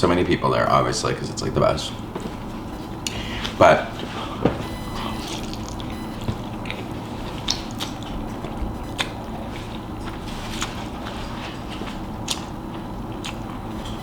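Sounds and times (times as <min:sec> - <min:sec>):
chewing: 0:04.8 - 0:14.0
mouth clicks and smacks: 0:05.1 - 0:06.7, 0:07.4 - 0:08.2.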